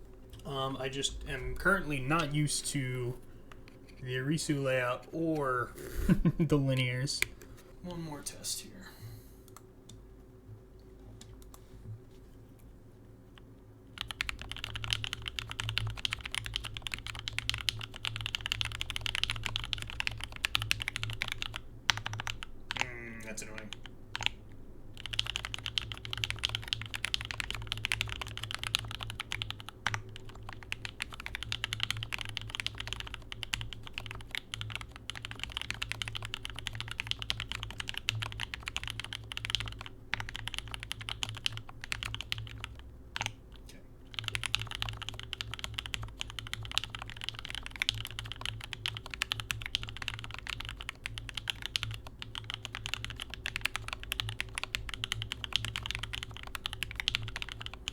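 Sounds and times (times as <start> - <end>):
mechanical keyboard typing: 13.9 - 24.4, 25.0 - 43.4, 44.1 - 57.9.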